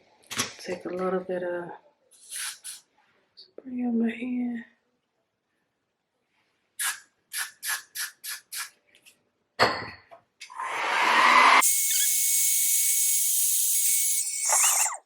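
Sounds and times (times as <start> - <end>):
rushing noise: 10.6 - 11.6
hair spray spritzes: 11.6 - 15.0.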